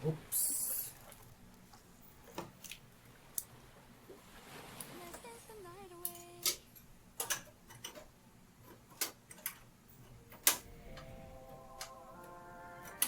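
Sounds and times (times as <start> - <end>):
computer hardware clicks and knocks: 7.2 - 10.6
faint background music: 9.9 - 13.0.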